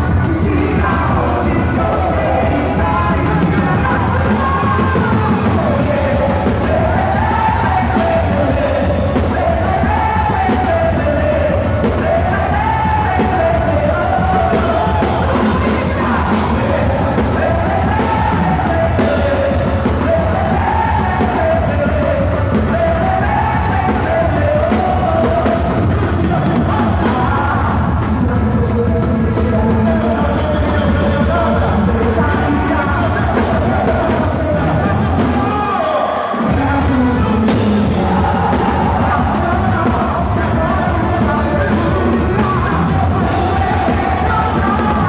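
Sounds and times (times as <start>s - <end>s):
folk dance music with singing: 0.0s - 45.0s
people yelling: 32.7s - 45.0s.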